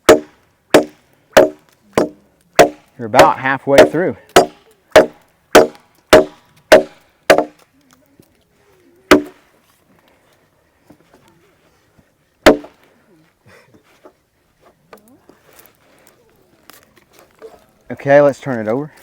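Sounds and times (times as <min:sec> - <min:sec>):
machete chopping into log: 0:00.0 - 0:07.6, 0:09.1 - 0:09.4, 0:12.5 - 0:12.8.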